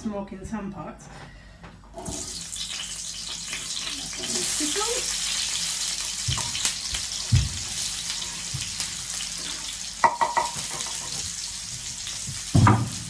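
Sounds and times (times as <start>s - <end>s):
vegetables sizzling in a pan: 2.0s - 13.0s
utensil knocking on pan: 10.0s - 11.1s, 12.5s - 13.0s.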